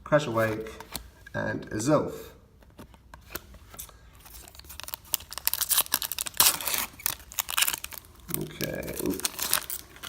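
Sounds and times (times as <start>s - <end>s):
foil wrapper crinkling and tearing: 4.2s - 10.0s.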